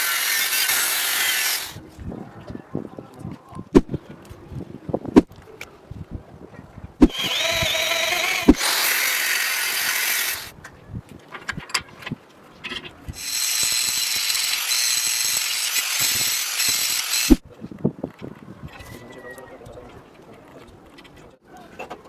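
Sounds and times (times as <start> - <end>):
power tool whining: 0.0 - 1.8, 7.0 - 10.5, 13.2 - 17.4.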